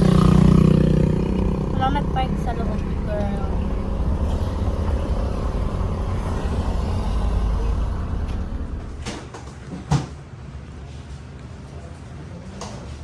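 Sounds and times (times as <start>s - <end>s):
motor vehicle rumble: 0.0s - 9.4s.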